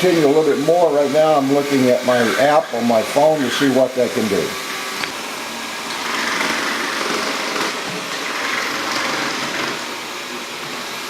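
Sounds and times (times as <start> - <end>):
robot vacuum whirring: 5.8 - 10.0.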